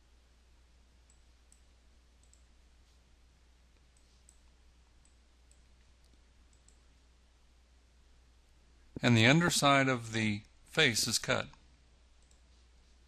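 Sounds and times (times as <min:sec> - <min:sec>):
low electrical hum: 0:00.0 - 0:13.0
computer mouse clicks: 0:01.0 - 0:02.5, 0:03.8 - 0:06.8, 0:12.2 - 0:12.5.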